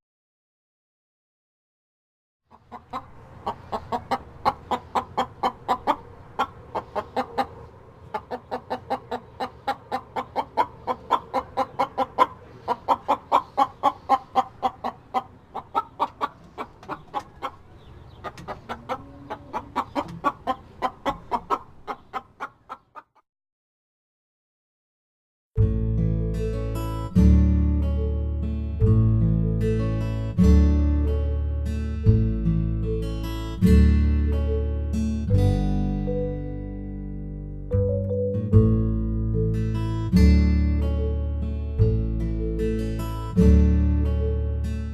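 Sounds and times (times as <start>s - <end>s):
hen clucking: 2.5s - 23.2s.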